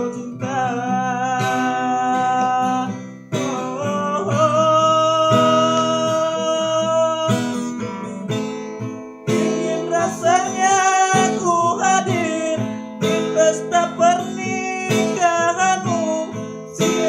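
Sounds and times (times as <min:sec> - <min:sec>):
person singing long notes: 0:00.0 - 0:08.4, 0:09.4 - 0:17.0
acoustic guitar strumming: 0:00.0 - 0:17.0.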